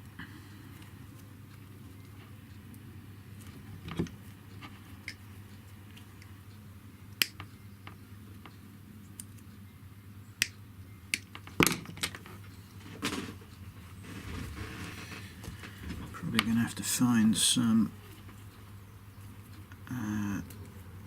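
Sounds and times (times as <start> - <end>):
faint low hum: 0.0 - 21.0.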